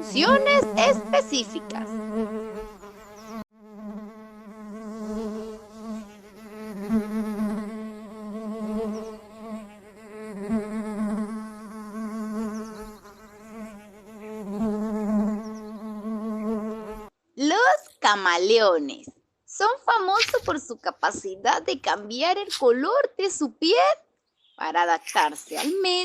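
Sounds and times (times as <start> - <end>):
bees buzzing: 0.0 - 17.1.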